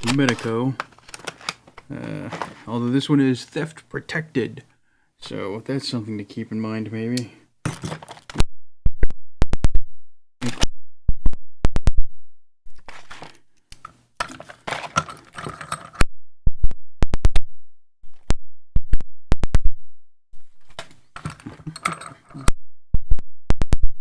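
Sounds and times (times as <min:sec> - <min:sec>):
lock rattling and scraping: 0:00.0 - 0:01.8, 0:07.7 - 0:08.4, 0:12.8 - 0:16.0, 0:20.5 - 0:22.5
metallic clicks and clinks: 0:13.8 - 0:16.0, 0:20.7 - 0:22.5.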